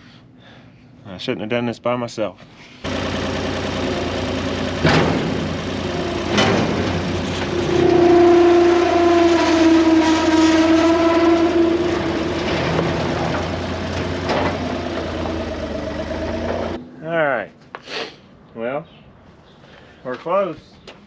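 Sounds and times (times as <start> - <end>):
skid loader engine running: 2.8 - 16.8
strong sustained whine: 2.9 - 17.0.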